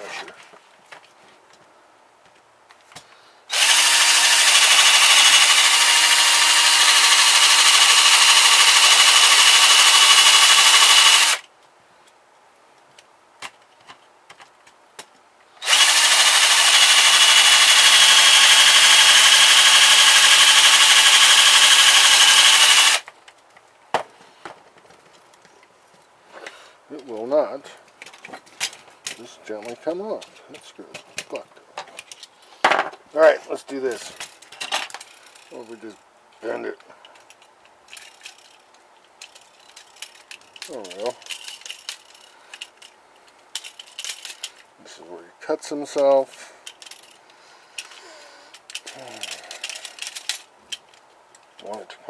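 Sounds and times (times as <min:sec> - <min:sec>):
electric drill under load: 0:03.5 - 0:11.4, 0:15.6 - 0:23.0.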